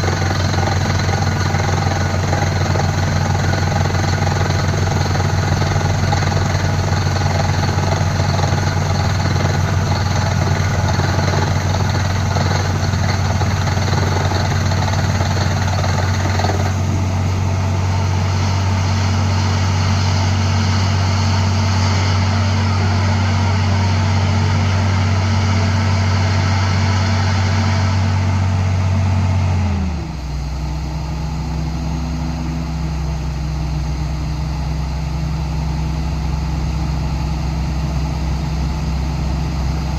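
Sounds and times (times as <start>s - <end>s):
rock drilling machine: 0.0s - 17.0s.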